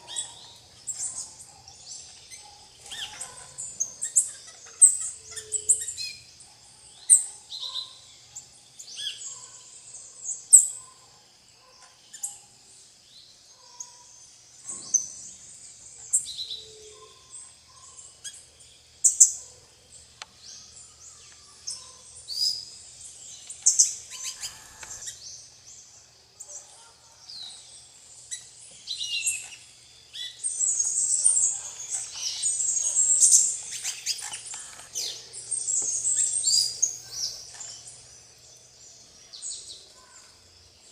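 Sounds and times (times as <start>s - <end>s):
parakeets and small birds chirping: 0.0s - 6.4s, 21.4s - 25.9s, 26.6s - 40.9s.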